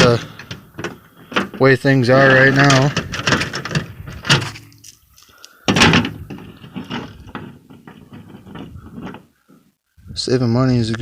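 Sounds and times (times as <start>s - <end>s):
clicks and knocks: 0.0s - 1.6s, 2.5s - 9.6s
loud thump: 5.7s - 6.4s.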